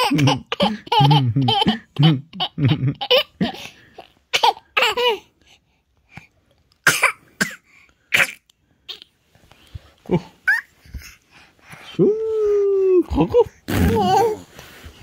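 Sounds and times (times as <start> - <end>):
baby laughing: 0.0 - 5.3, 10.1 - 11.2, 13.1 - 14.5.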